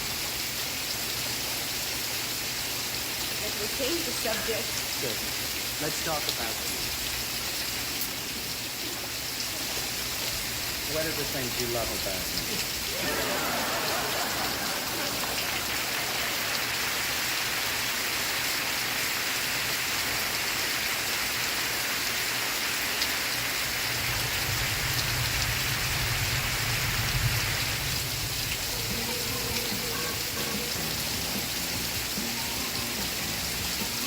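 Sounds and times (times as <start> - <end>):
steady rain hiss: 0.0 - 34.0
low rumble: 23.7 - 28.9.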